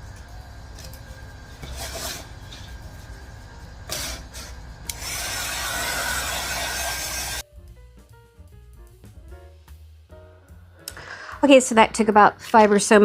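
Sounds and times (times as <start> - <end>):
hot-air blower whirring: 0.0 - 7.4.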